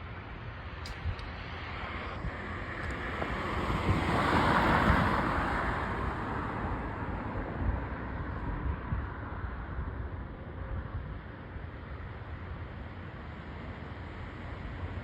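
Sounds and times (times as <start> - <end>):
vehicle passing on street: 1.4 - 9.1.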